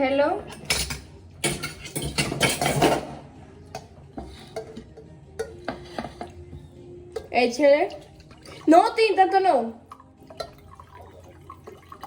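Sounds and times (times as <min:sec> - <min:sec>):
dishes and cutlery clattering: 0:00.4 - 0:06.5.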